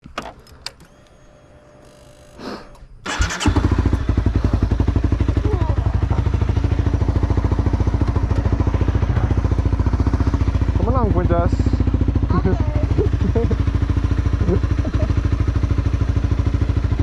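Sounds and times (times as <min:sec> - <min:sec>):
motorcycle engine idling: 0:03.1 - 0:17.0.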